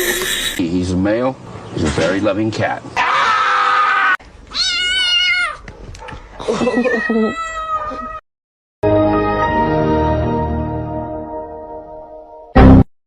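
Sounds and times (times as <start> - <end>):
cat meowing: 4.5 - 5.6, 6.5 - 8.2.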